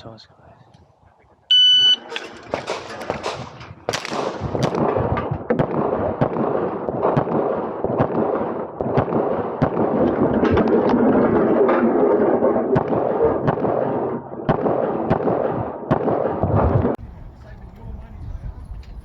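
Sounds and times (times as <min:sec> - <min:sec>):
handgun shots: 0:02.1 - 0:06.4.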